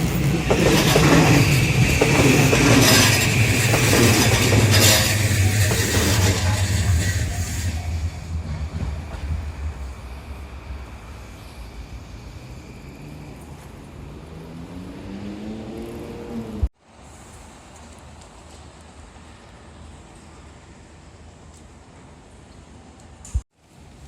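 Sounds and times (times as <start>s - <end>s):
passing vehicle rumble: 11.6s - 16.7s.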